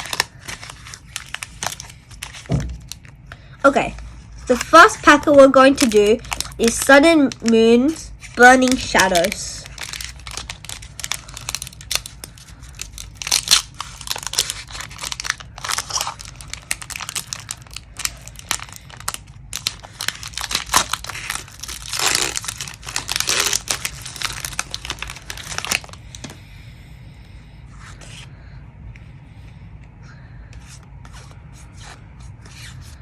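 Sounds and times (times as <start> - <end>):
foil wrapper crinkling and tearing: 0.0 - 3.2, 3.9 - 26.3.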